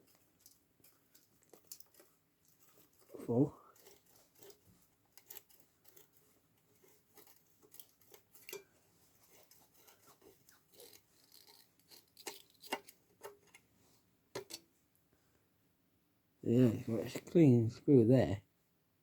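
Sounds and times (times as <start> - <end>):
clicks and taps of metal parts: 14.3 - 14.6.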